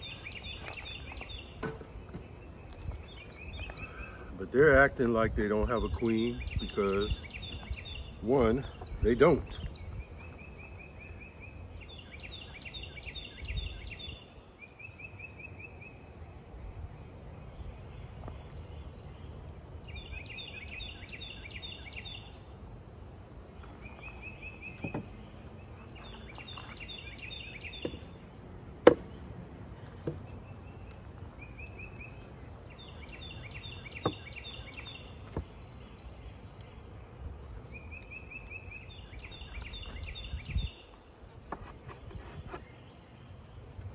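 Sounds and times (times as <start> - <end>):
songbird trilling: 5.5 - 16.0, 19.8 - 22.4, 23.6 - 29.2, 30.0 - 43.6
sharp knocks: 28.8 - 29.1.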